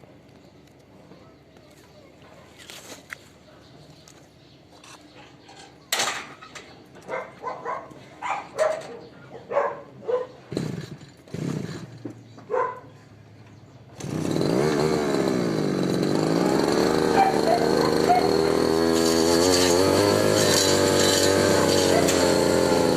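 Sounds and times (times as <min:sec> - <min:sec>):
dog barking: 0:07.1 - 0:10.4, 0:12.5 - 0:12.9, 0:17.1 - 0:18.3, 0:21.9 - 0:22.2
brush cutter engine running: 0:10.4 - 0:12.3, 0:13.9 - 0:22.9.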